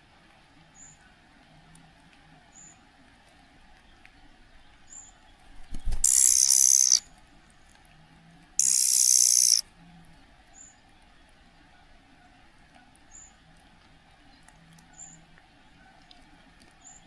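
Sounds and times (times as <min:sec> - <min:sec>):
bird giving harsh hissing calls: 0:05.8 - 0:07.0, 0:08.6 - 0:09.6.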